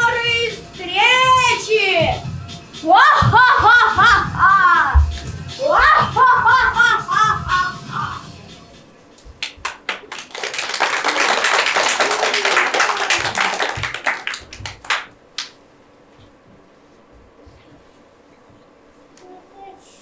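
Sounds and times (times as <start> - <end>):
audience applause: 9.6 - 15.1.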